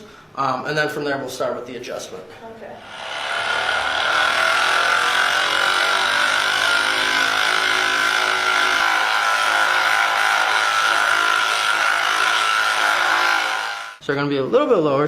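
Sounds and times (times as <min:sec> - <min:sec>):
electric massager buzzing: 0:02.8 - 0:14.0.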